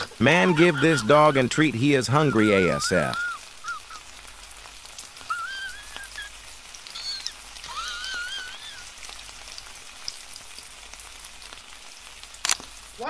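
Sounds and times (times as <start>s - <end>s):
dog whining: 2.2s - 4.1s, 6.9s - 8.9s.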